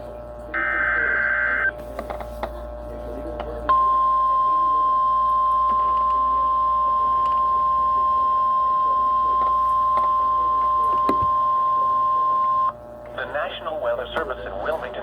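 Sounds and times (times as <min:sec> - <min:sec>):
steady alarm tone: 0:03.7 - 0:12.8.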